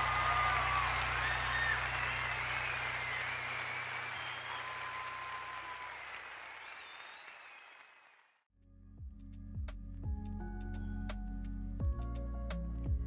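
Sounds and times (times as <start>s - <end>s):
audience applause: 0.0s - 8.4s
whistles from audience: 0.0s - 8.4s.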